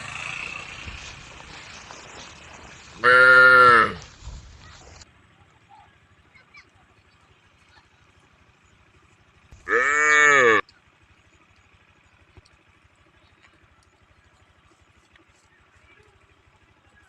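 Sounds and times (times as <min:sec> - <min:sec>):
cow mooing: 0:03.0 - 0:04.0, 0:09.7 - 0:10.6.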